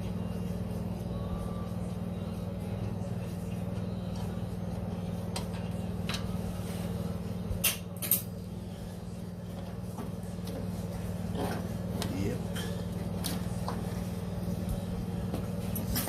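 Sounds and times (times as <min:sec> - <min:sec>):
low mechanical hum: 0:00.0 - 0:16.0.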